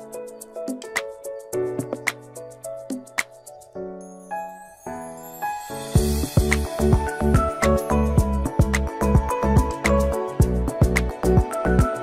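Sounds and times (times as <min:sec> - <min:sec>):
music with pulsing beat: 0:06.0 - 0:12.0.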